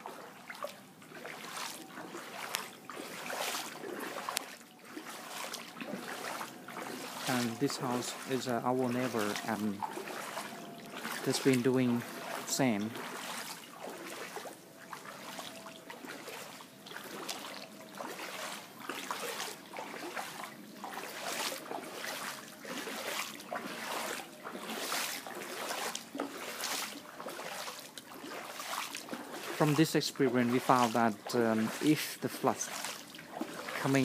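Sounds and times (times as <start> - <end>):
water splashing and sloshing: 0.0 - 34.0.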